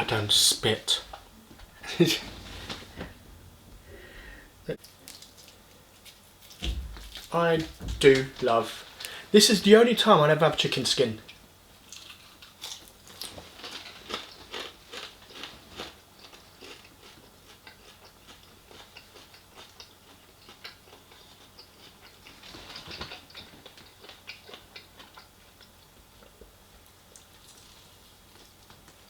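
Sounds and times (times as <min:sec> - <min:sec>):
chewing crispy chicken skin: 0:11.8 - 0:29.0.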